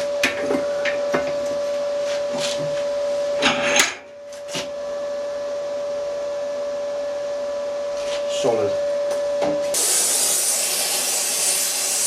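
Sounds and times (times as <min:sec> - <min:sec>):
gas torch flame hissing: 0:09.8 - 0:12.0.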